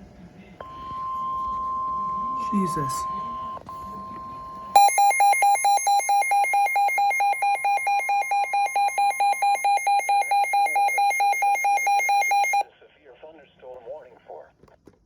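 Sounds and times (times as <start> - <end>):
rapid electronic alarm beeps: 0.6 - 12.6.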